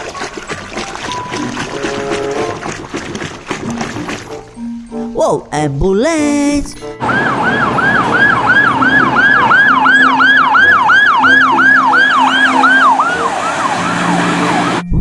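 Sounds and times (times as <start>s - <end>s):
ambulance siren yelp: 7.0s - 15.0s.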